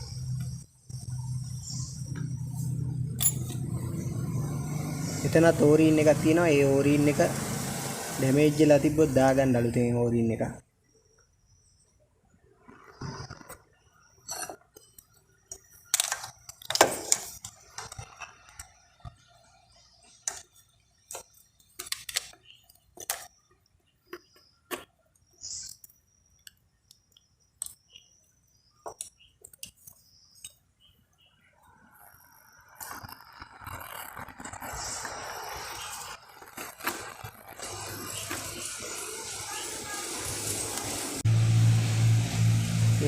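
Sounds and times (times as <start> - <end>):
metal tools clinking: 3.1 - 3.7.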